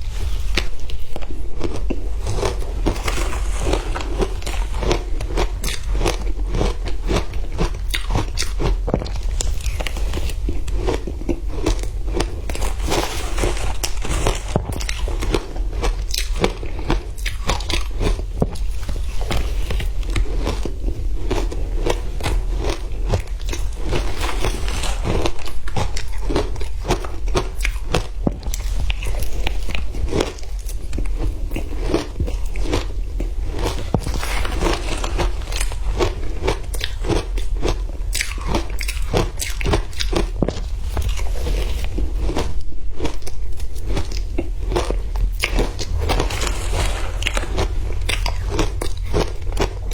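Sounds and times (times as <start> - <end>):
ice crunching between teeth: 0.2 - 49.9
steady low hum: 40.3 - 49.9.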